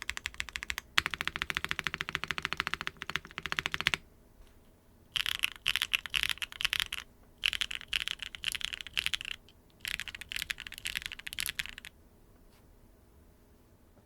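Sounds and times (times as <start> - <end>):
typing on mechanical keyboard: 0.0 - 4.0, 5.2 - 11.9.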